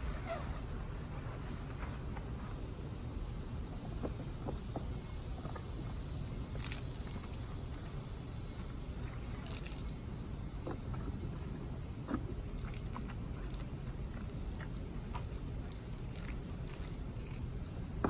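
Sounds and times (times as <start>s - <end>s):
small clicks and drips: 6.6s - 10.1s, 12.1s - 17.4s.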